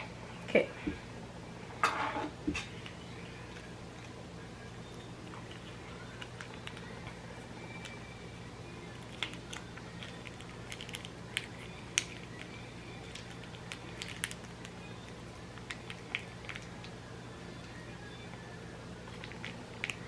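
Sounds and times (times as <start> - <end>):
steady low hum: 0.0 - 20.0
plastic packet crinkling and tearing: 9.0 - 12.5, 13.1 - 14.8.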